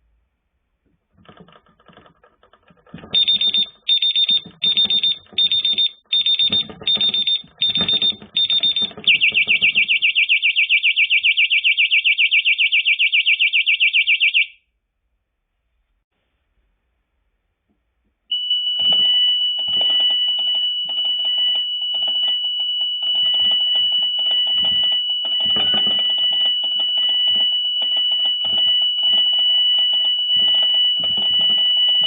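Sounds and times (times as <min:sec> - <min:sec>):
rattle of knocks: 0:00.9 - 0:10.0, 0:20.9 - 0:32.0
fast warbling alarm tone: 0:03.0 - 0:14.6, 0:18.3 - 0:32.0.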